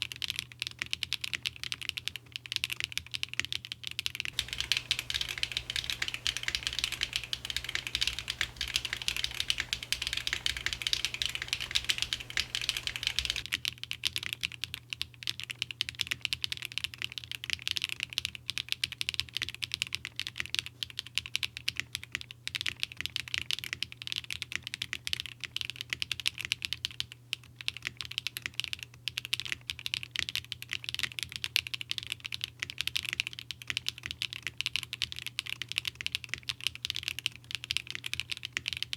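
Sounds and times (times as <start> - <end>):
mechanical keyboard typing: 4.3 - 13.6, 32.8 - 38.9.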